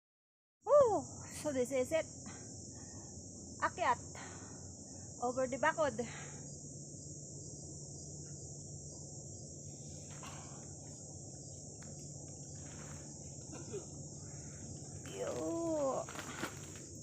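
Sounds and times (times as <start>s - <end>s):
trilling insects chorus: 0.7s - 17.0s
faint rustles: 9.7s - 17.0s.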